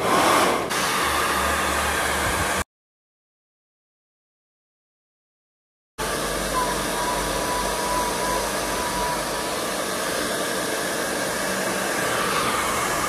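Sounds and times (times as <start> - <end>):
hair dryer running: 0.0 - 2.6, 6.0 - 13.0.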